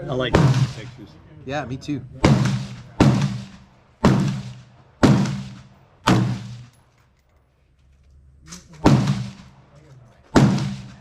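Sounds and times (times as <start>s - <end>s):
gunshots: 0.2s - 1.0s, 2.2s - 6.7s, 8.8s - 9.6s, 10.3s - 11.0s.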